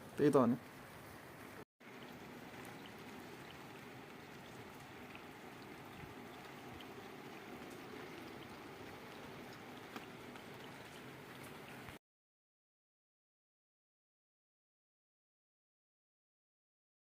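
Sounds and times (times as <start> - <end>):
steady rain falling: 0.2 - 12.0
faint drips: 1.8 - 12.0.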